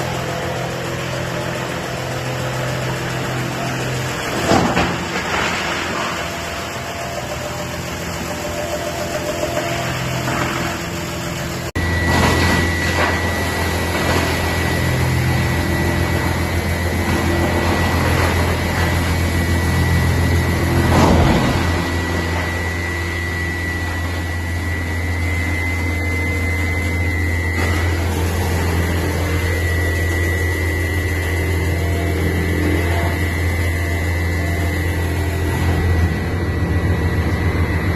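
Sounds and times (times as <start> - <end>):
material going through chipper: 0.0 - 37.9
wood chipper running: 0.0 - 37.9.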